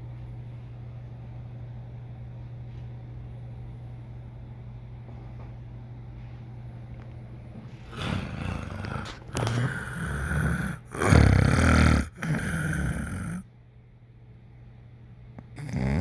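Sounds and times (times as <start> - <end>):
loud snoring: 7.9 - 13.4, 15.6 - 16.0.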